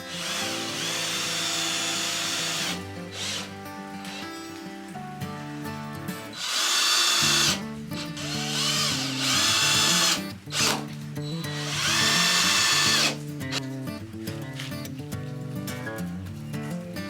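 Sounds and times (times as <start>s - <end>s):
power drill bursts: 0.0s - 4.4s, 6.3s - 13.2s
background music: 0.0s - 17.0s.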